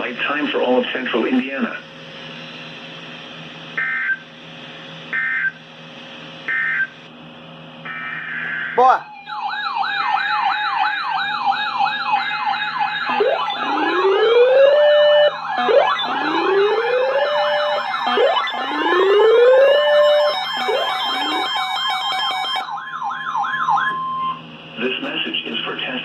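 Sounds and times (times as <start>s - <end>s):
slow rising siren tones: 7.8s - 24.5s
fast wailing sirens: 7.9s - 24.5s.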